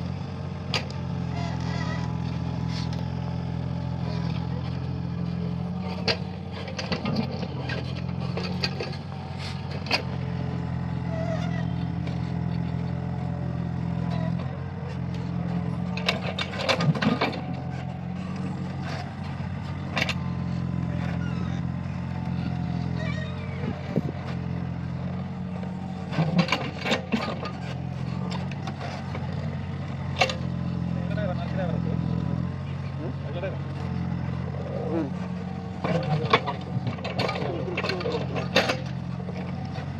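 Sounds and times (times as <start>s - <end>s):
excavator diesel engine running: 0.0s - 39.9s
bucket and linkage clanking: 14.0s - 24.4s, 26.1s - 29.5s, 35.8s - 39.7s.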